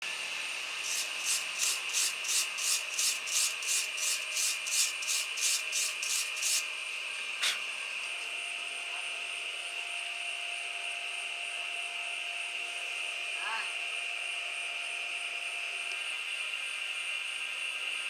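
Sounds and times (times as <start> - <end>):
rhythmic scraping on metal: 0.8 - 6.7.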